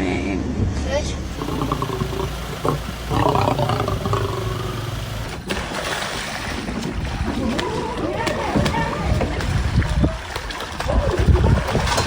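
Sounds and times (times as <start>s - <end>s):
large wild animal calling: 1.2s - 5.3s.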